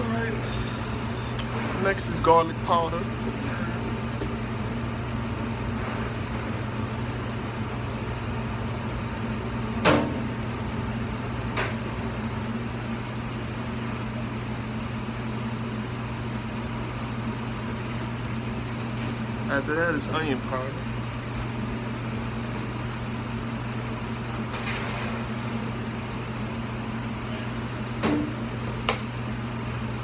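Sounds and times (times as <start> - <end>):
low machine hum: 0.0 - 30.0.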